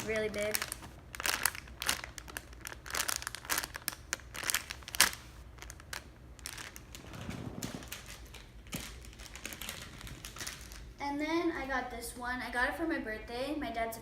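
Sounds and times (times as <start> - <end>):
plastic packaging crinkling: 0.0 - 11.0.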